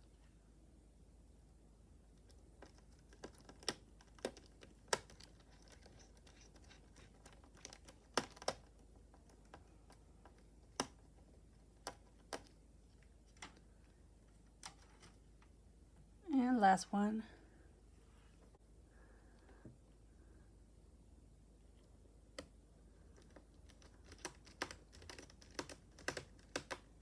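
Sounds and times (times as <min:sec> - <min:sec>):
small parts clicking and tapping: 0:02.2 - 0:15.5.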